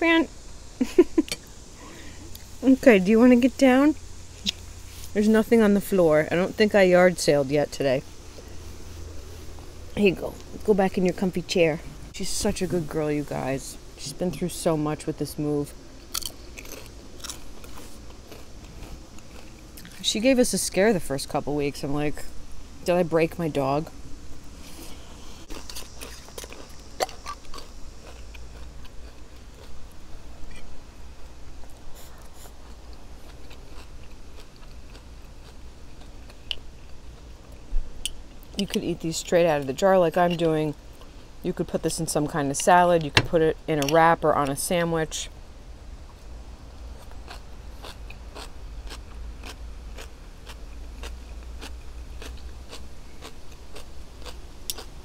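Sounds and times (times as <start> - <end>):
steady low rumble: 0.0 - 53.1
low steady hum: 0.0 - 55.0
person chewing and crunching: 16.0 - 20.0, 24.7 - 38.7, 47.0 - 55.0.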